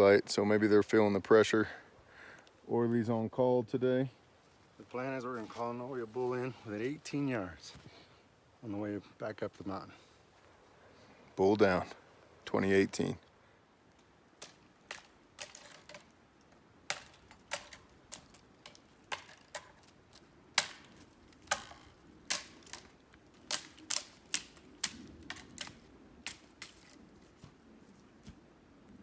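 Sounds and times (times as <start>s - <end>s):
footsteps crunching on twigs: 13.9s - 28.5s.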